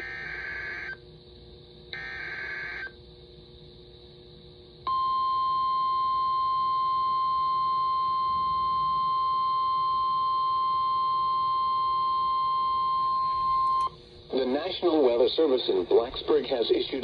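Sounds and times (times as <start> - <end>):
steady warning alarm tone: 0.0 - 1.0, 1.9 - 3.0, 4.9 - 14.0.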